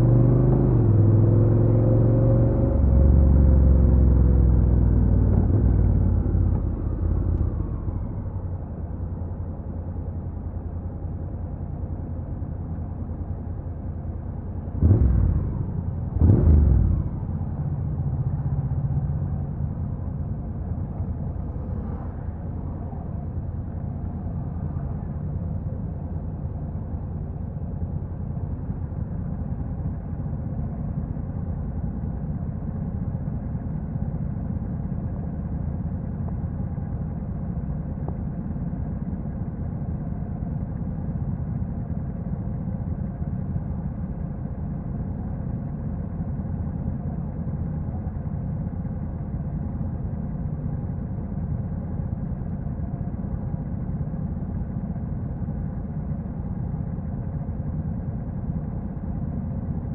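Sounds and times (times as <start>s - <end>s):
motorcycle engine running: 14.8s - 20.0s.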